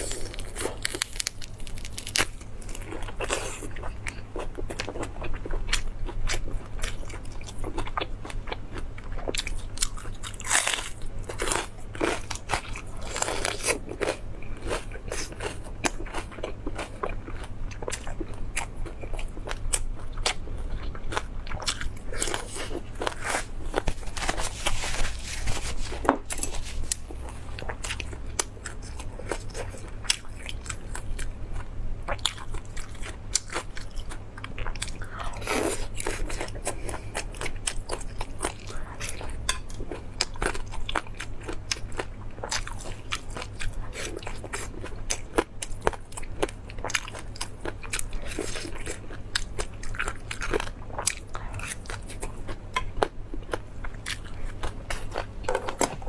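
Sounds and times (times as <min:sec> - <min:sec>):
person biting and chewing food: 0:00.0 - 0:05.8, 0:09.3 - 0:31.4, 0:32.1 - 0:45.4
steady low hum: 0:00.0 - 0:56.0.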